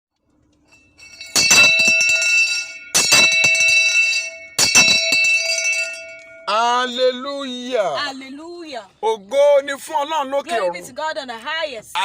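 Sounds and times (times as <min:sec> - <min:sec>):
metallic bell chime: 0:00.7 - 0:07.2.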